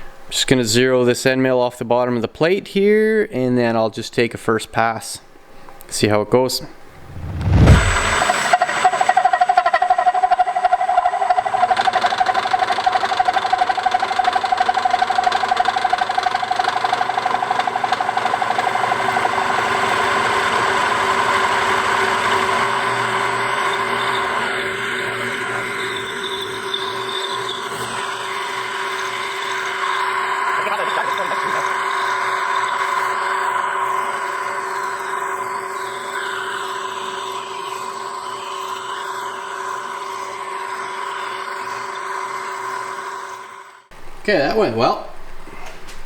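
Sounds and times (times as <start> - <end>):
milling machine cutting steel: 7.6 - 43.8.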